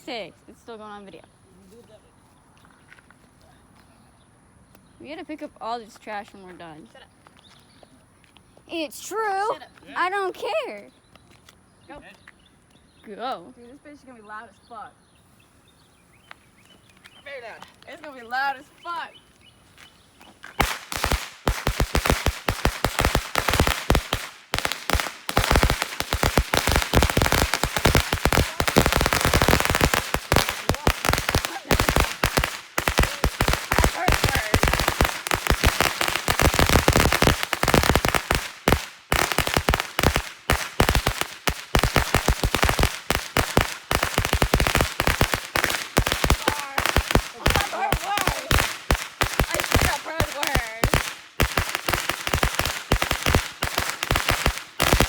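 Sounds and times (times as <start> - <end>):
firecrackers banging: 20.5 - 55.0.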